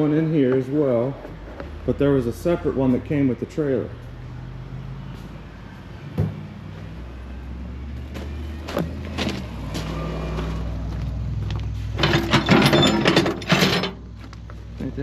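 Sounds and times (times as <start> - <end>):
metal clanks: 11.9 - 14.1
rattling metal clatter: 11.9 - 14.1.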